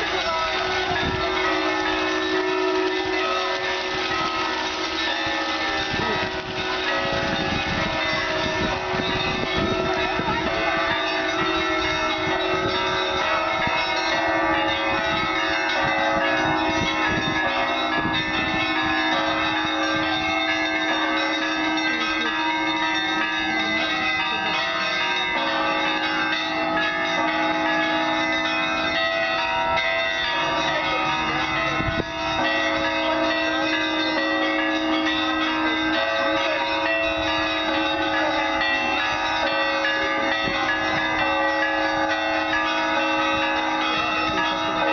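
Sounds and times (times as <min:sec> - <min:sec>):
church bells pealing: 0:00.0 - 0:44.9
steady low bell tone: 0:00.0 - 0:44.9.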